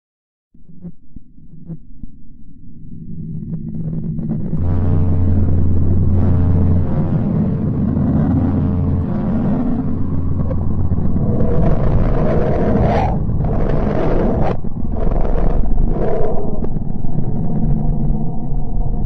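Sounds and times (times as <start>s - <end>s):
low rumbling drone: 0.6s - 19.0s.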